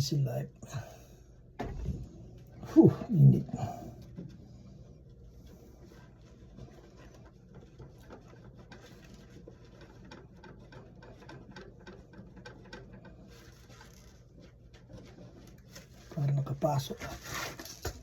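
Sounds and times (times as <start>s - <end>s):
low steady hum: 0.0s - 18.0s
small clicks and scrapes: 4.0s - 18.0s.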